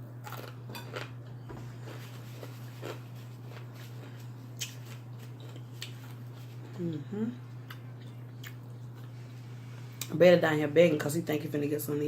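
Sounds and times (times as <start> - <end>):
steady low hum: 0.0 - 12.0
person chewing: 0.2 - 9.4.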